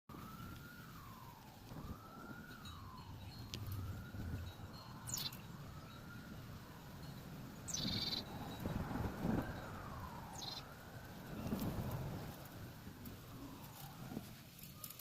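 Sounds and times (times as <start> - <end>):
distant wailing siren: 0.1 - 15.0
low rumble: 1.8 - 7.0
bird chirping: 3.2 - 6.3, 7.6 - 8.8, 10.3 - 10.7.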